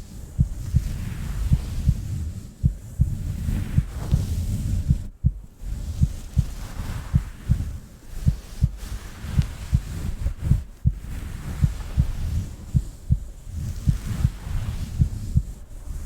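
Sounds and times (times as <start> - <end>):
faint hiss: 0.0 - 16.0
heartbeat double thump: 0.4 - 2.0, 3.8 - 6.5, 10.5 - 12.1, 12.8 - 14.4.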